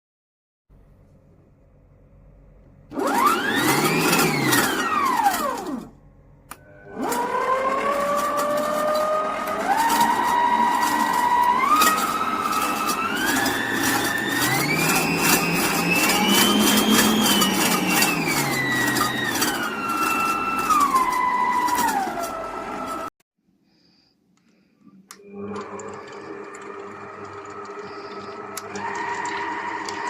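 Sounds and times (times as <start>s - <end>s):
stand mixer motor whine: 2.9s - 23.1s, 25.2s - 30.0s.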